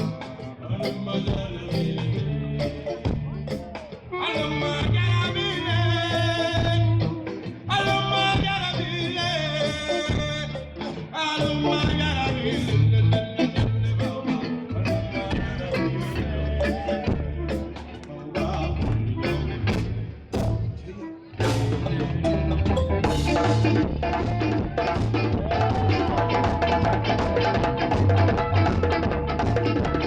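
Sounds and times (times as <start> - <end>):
live band playing: 0.0 - 30.0.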